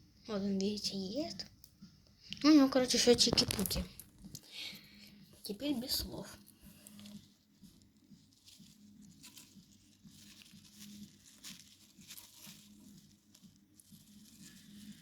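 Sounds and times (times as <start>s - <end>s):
hamster scratching and rustling: 2.9s - 4.4s, 5.4s - 15.0s.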